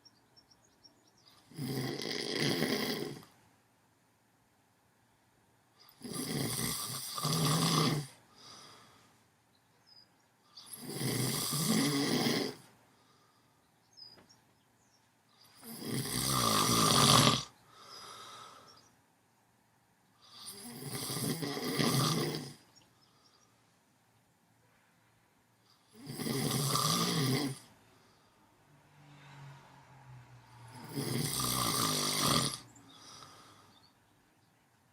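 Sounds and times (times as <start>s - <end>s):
person snoring: 1.4s - 3.3s, 5.8s - 9.0s, 10.6s - 12.7s, 15.5s - 18.7s, 20.2s - 22.6s, 25.8s - 27.7s, 30.6s - 33.7s
soft breath: 8.2s - 9.3s, 12.6s - 13.9s, 17.6s - 19.0s, 22.8s - 23.9s, 27.8s - 30.0s, 32.8s - 34.0s.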